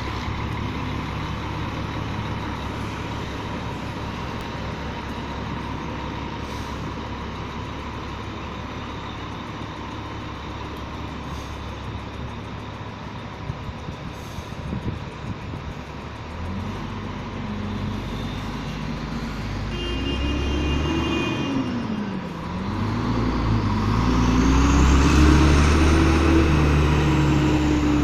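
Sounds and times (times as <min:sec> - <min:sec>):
bus diesel engine running: 0:00.0 - 0:28.0.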